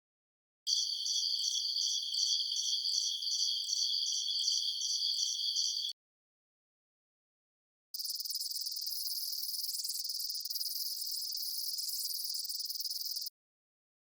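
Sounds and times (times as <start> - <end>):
high-pitched insect chirring: 0.7 - 5.9, 8.0 - 13.3.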